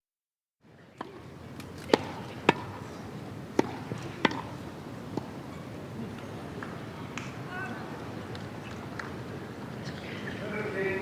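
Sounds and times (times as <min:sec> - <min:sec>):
outdoor background noise: 0:00.6 - 0:11.0
tennis ball bouncing on court: 0:01.0 - 0:02.8, 0:03.5 - 0:05.4
tennis ball struck by rackets: 0:01.0 - 0:02.8, 0:03.5 - 0:05.4.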